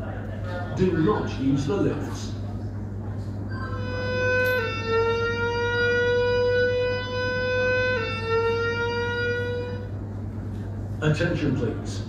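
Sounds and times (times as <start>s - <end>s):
fire alarm alert tone: 3.5s - 9.8s.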